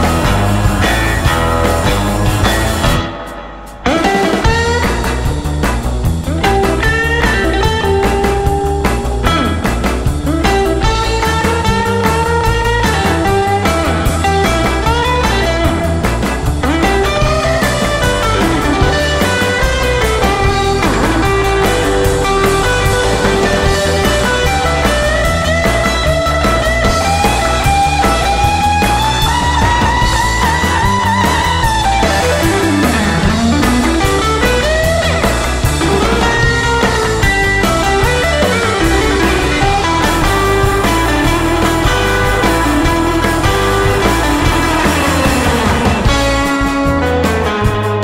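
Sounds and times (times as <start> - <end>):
bass: 0.0 - 48.0
electric guitar lead melody: 0.0 - 48.0
steady drum beat: 0.0 - 48.0.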